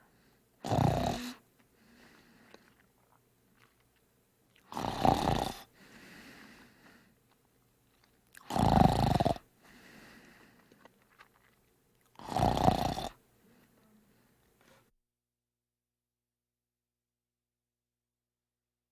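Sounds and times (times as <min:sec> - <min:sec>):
loud snores: 0:00.6 - 0:01.4, 0:04.7 - 0:05.7, 0:08.5 - 0:09.5, 0:12.2 - 0:13.2
soft breathing: 0:01.2 - 0:02.9, 0:05.6 - 0:07.4, 0:09.6 - 0:11.0, 0:13.4 - 0:14.9.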